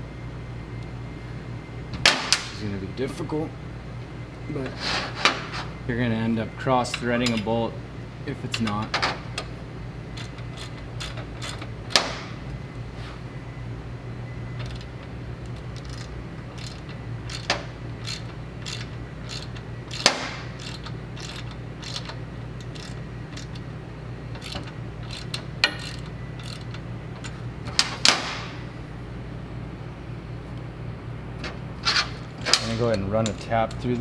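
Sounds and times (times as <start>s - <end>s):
steady low hum: 0.0s - 34.0s
metal tools clinking: 6.9s - 7.7s, 14.6s - 28.6s, 31.4s - 34.0s.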